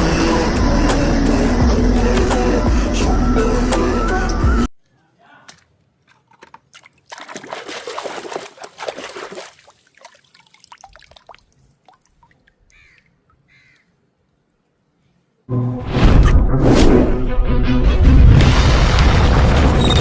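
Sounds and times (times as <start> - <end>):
water splashing: 5.5 - 13.4
water dripping: 5.5 - 13.9.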